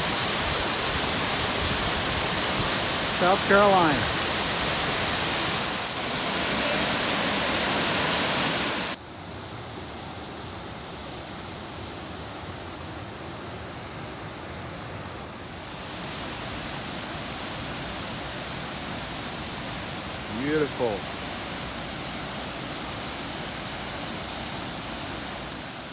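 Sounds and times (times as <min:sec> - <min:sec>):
waterfall rushing: 0:00.0 - 0:09.0, 0:15.5 - 0:25.9
quieter rush of water: 0:00.0 - 0:25.9.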